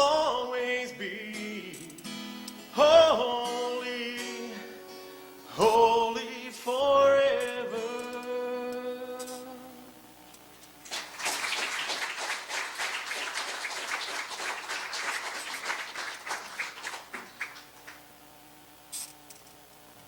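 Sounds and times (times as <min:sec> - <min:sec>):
congregation applauding: 0:10.8 - 0:18.1.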